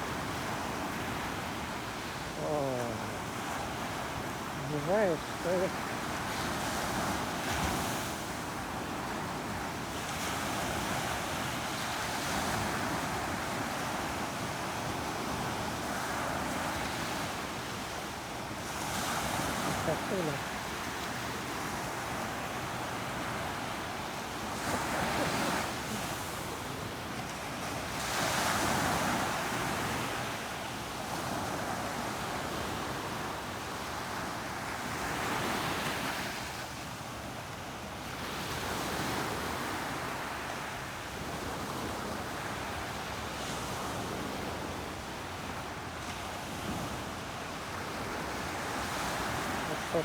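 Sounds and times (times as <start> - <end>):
surf breaking on a beach: 0.0 - 50.0.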